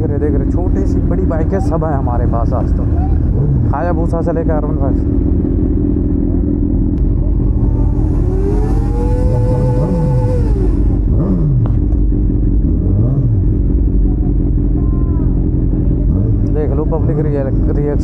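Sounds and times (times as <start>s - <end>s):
motorcycle engine revving: 0.0s - 18.0s
motorcycle engines idling: 0.0s - 18.0s.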